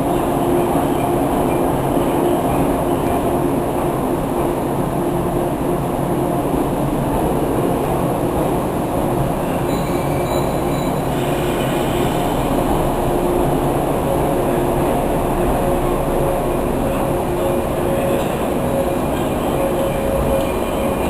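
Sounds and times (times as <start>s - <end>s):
train wheels rumbling on rails: 0.0s - 21.0s
faint wheel squeal: 9.7s - 12.2s.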